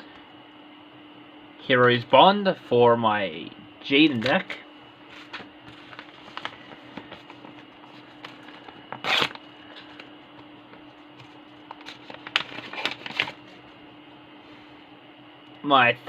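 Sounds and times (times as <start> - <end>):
packaging tearing rustle: 5.2 - 10.1, 11.3 - 13.5
cards clicking and rustling: 5.2 - 13.5.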